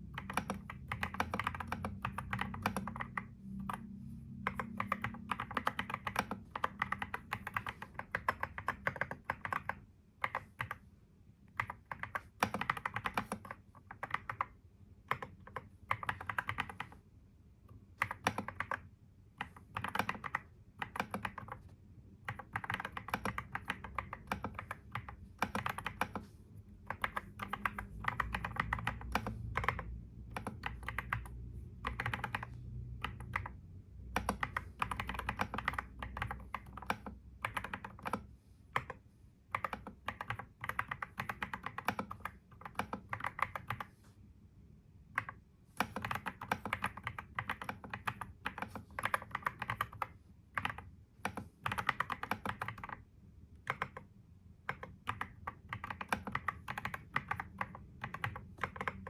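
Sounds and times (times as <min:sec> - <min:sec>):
computer keyboard typing: 0:00.0 - 0:10.9, 0:11.5 - 0:17.0, 0:17.9 - 0:44.0, 0:45.1 - 0:59.0.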